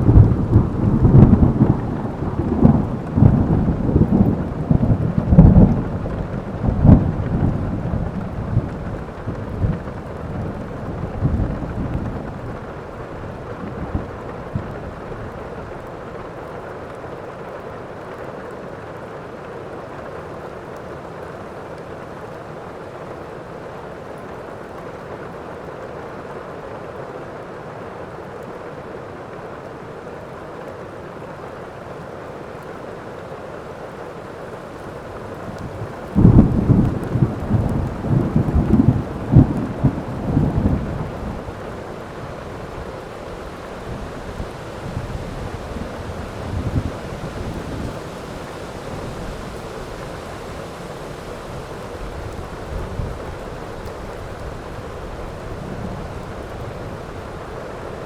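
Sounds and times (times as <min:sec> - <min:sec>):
thunder rumbling and crackling: 0:00.0 - 0:16.7, 0:34.8 - 0:58.0
steady rain: 0:00.0 - 0:58.0.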